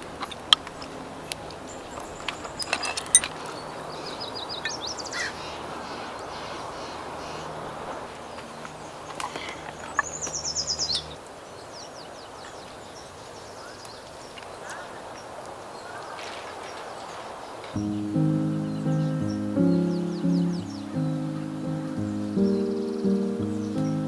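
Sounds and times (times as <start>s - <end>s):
steady outdoor hiss: 17.8s - 24.0s.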